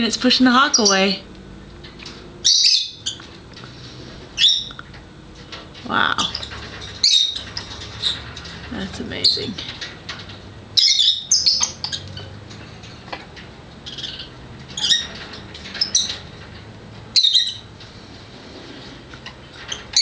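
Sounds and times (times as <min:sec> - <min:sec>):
birds giving harsh high calls: 0:02.4 - 0:05.0, 0:05.9 - 0:09.8, 0:10.8 - 0:12.4, 0:13.8 - 0:16.5, 0:17.1 - 0:17.7, 0:18.5 - 0:20.0.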